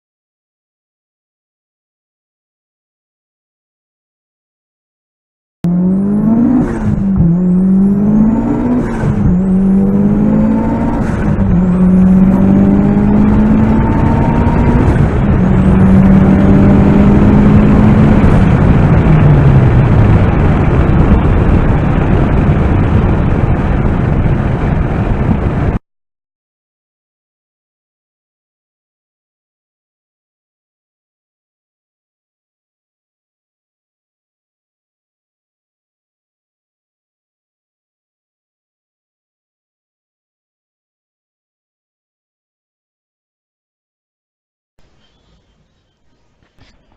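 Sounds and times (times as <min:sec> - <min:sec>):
car engine accelerating: 0:05.6 - 0:25.8.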